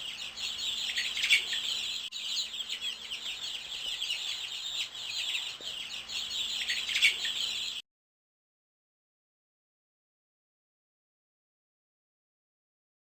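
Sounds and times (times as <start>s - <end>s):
songbirds chirping and trilling: 0.0s - 7.8s.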